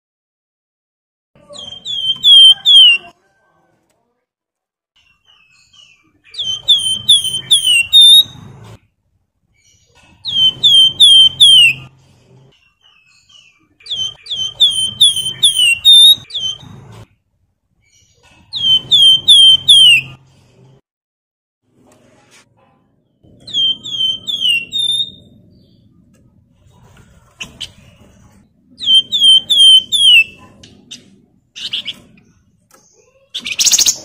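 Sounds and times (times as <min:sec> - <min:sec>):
bird singing down-slurred whistles: 0:05.6 - 0:08.4, 0:10.3 - 0:11.8, 0:13.3 - 0:16.6, 0:18.5 - 0:20.2, 0:23.5 - 0:25.3, 0:28.8 - 0:30.4.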